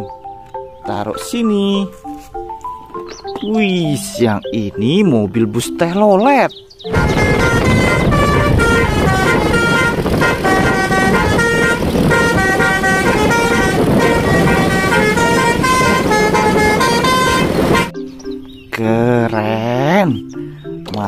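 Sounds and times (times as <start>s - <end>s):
vehicle noise: 6.8s - 18.0s
bus horn playing tune: 6.9s - 18.0s.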